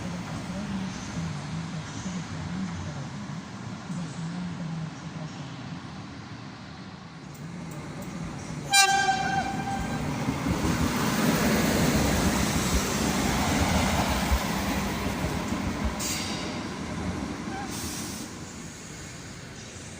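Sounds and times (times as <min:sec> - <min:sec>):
train rumbling past: 0:05.6 - 0:19.9
train horn blast: 0:08.6 - 0:10.1.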